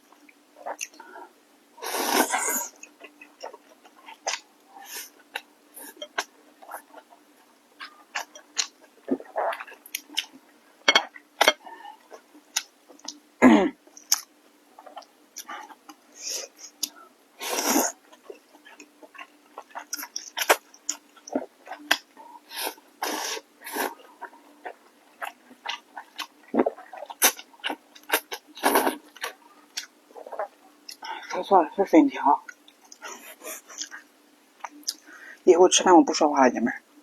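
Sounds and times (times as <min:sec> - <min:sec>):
faint steady hum: 0:00.0 - 0:37.0
slurping noodles: 0:01.8 - 0:02.8, 0:17.4 - 0:18.0, 0:22.5 - 0:24.0
mouth chewing and smacking: 0:07.8 - 0:10.4, 0:14.0 - 0:16.0, 0:18.0 - 0:22.4, 0:23.9 - 0:31.4, 0:32.5 - 0:35.1.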